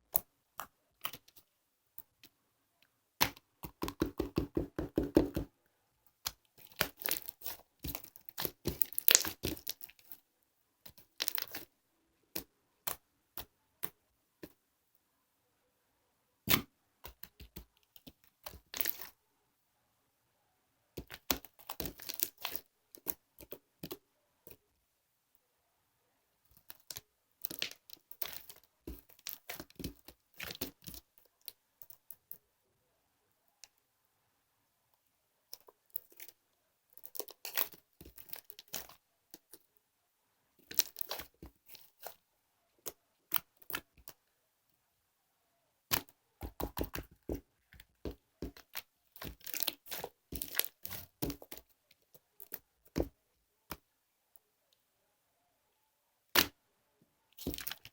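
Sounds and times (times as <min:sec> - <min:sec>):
crinkling handling noise: 0:06.5 - 0:10.2, 0:17.7 - 0:19.1, 0:21.0 - 0:24.0, 0:26.5 - 0:32.1, 0:37.0 - 0:39.6, 0:40.6 - 0:42.2, 0:45.9 - 0:53.1, 0:57.4 - 0:57.9.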